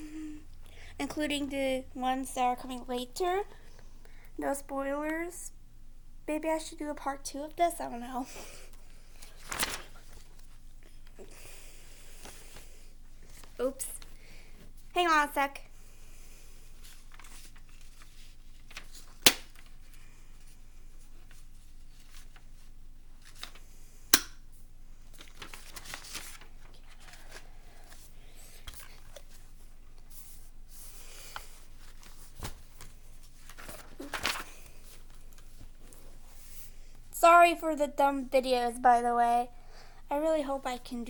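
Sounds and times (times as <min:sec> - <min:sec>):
paper rustling: 0:09.0 - 0:11.2, 0:16.8 - 0:23.7, 0:25.0 - 0:36.7.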